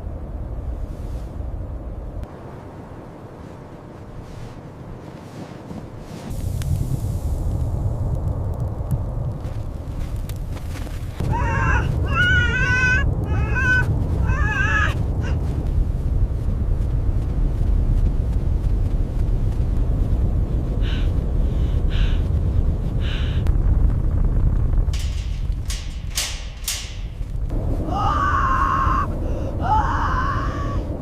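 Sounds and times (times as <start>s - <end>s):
wind rumbling: 0.0s - 31.0s
rustling: 3.3s - 6.9s, 24.8s - 27.8s.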